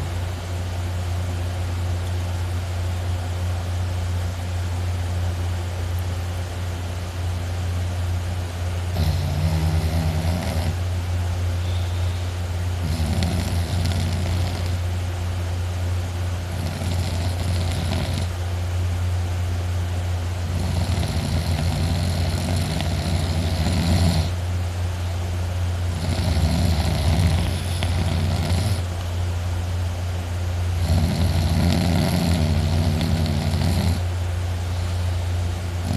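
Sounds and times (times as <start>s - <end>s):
steady low hum: 0.0s - 35.9s
person snoring loudly: 8.9s - 10.9s, 12.8s - 14.8s, 16.5s - 18.4s, 20.4s - 24.4s, 25.9s - 28.9s, 30.8s - 34.1s.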